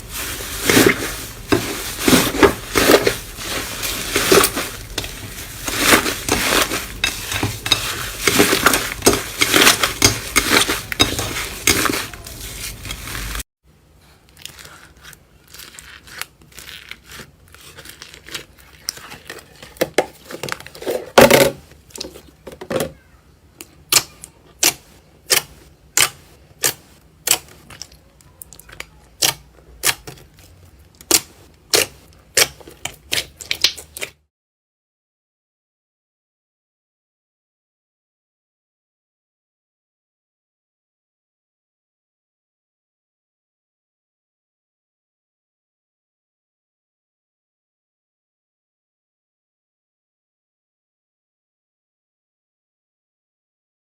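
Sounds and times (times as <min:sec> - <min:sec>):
slime crunchy crackling: 0:00.0 - 0:13.4, 0:14.4 - 0:19.8
slime squelching: 0:00.0 - 0:13.4, 0:14.2 - 0:21.1, 0:23.6 - 0:34.2.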